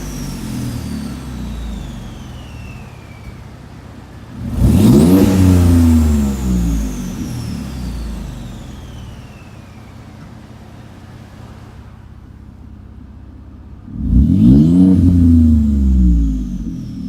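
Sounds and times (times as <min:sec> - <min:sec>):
turbo whistle: 0:00.0 - 0:03.4, 0:06.3 - 0:10.2
turbocharged engine revving: 0:00.0 - 0:17.0.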